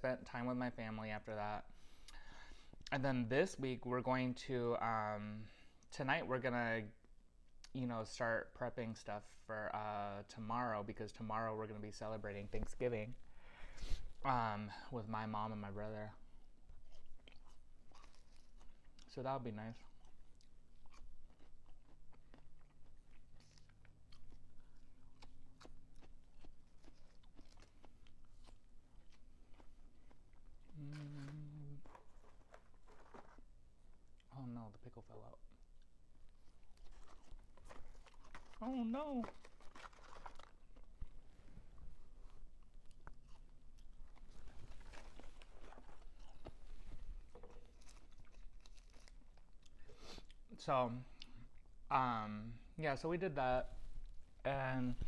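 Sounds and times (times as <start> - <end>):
person chewing crunchy food: 16.0 - 34.3, 35.5 - 50.5.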